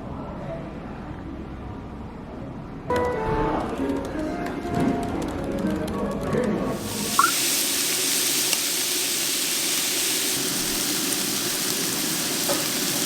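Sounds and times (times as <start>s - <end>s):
rushing water hiss: 6.8s - 13.0s.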